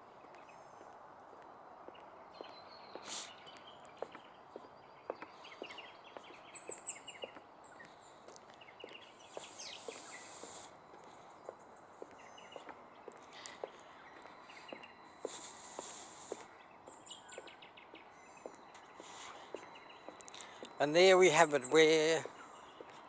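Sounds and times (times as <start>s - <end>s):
footsteps on wooden boardwalk: 0.0s - 23.0s
birds chirping and calling: 0.2s - 23.0s
hiss: 3.0s - 3.4s, 9.3s - 10.7s, 15.2s - 16.5s.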